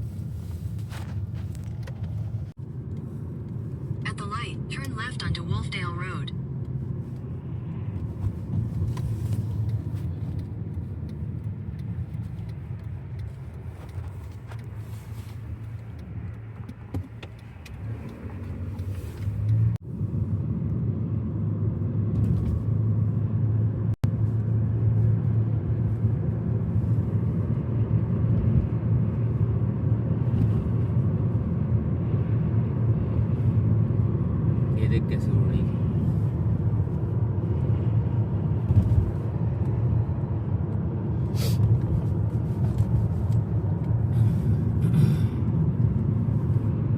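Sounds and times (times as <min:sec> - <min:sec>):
car engine and road noise: 0:00.0 - 0:46.9.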